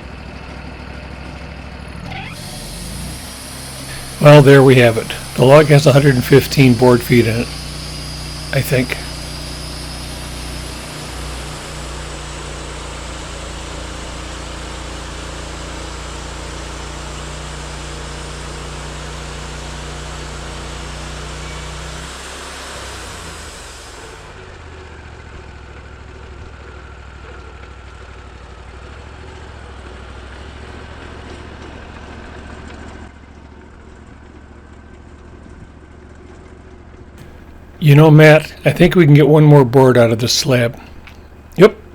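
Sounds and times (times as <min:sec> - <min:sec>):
sawmill engine running: 0:02.1 - 0:24.7, 0:37.2 - 0:41.9
wide hiss: 0:02.4 - 0:11.0.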